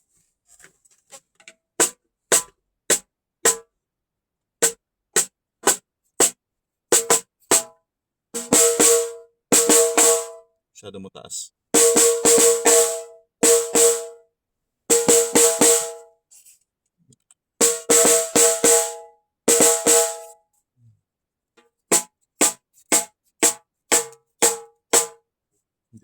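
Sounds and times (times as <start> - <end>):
snare drum strokes: 17.6 - 20.3.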